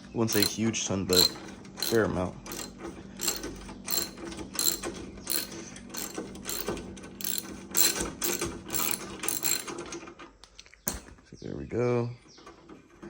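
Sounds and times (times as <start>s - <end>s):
ratchet wrench clicking: 0.3s - 9.8s.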